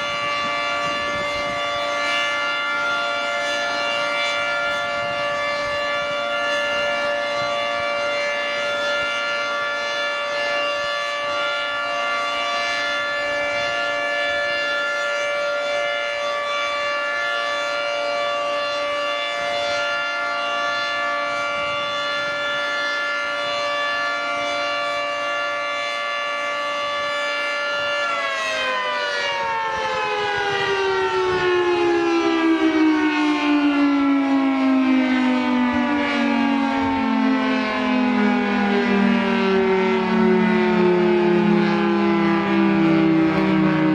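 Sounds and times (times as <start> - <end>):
three-tone warning siren: 0.0 - 43.9.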